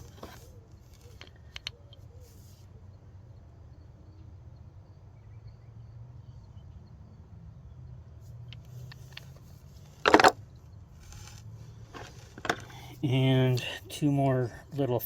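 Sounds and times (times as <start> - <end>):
low steady hum: 0.0 - 15.0
screwdrivers clicking: 8.6 - 10.4.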